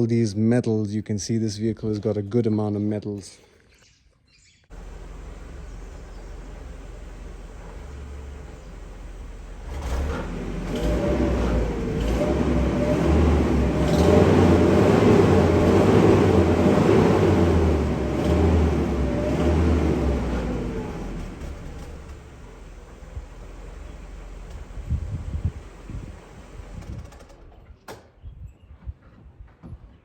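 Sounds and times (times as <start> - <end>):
car engine running: 4.7 - 26.9
noisy exhaust: 4.7 - 27.8.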